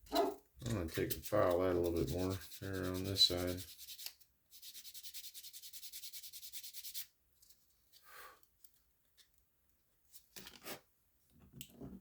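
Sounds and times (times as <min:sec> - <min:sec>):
hand file scraping: 0:00.1 - 0:07.1
soft handling sound: 0:07.3 - 0:12.0.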